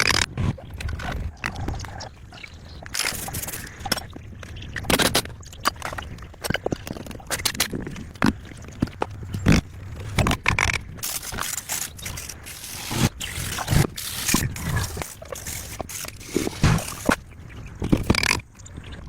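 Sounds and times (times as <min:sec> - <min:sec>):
irregular scraping: 0:11.0 - 0:17.3.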